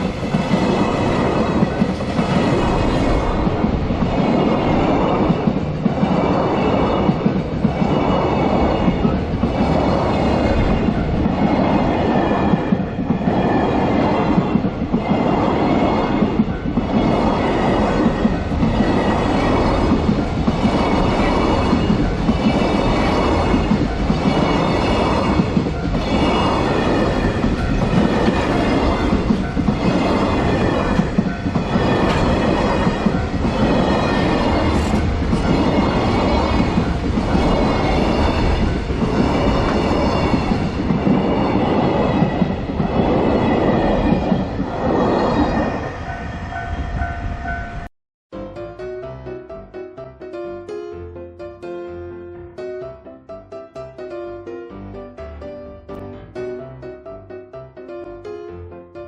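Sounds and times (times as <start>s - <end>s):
train wheels clattering over rails: 0.0s - 45.8s.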